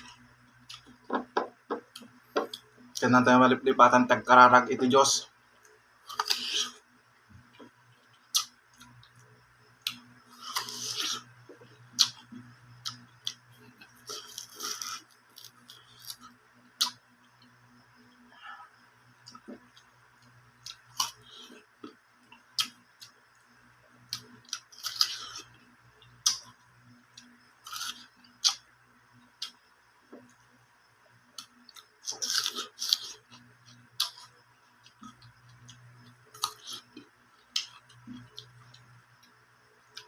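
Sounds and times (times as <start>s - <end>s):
crunchy biting and chewing: 6.1s - 6.8s, 8.2s - 17.0s, 19.3s - 23.2s, 24.1s - 28.6s, 31.4s - 38.9s.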